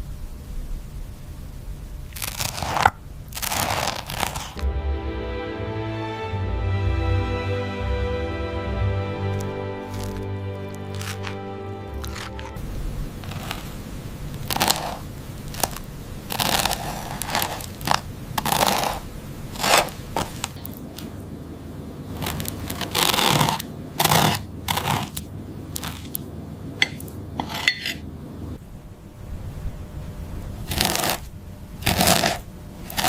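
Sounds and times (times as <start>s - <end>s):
scraping and rustling: 2.1s - 4.6s, 9.4s - 21.2s, 26.8s - 28.0s, 28.6s - 33.0s.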